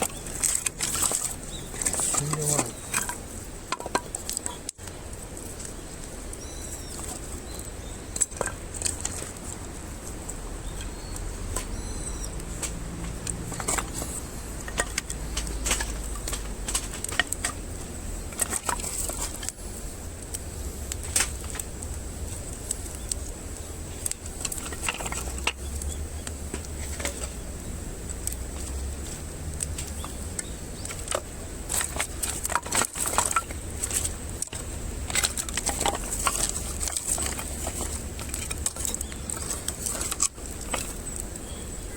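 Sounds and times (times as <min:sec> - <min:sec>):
sharp pops and snaps: 0:00.0 - 0:41.6
campfire crackling: 0:00.0 - 0:41.9.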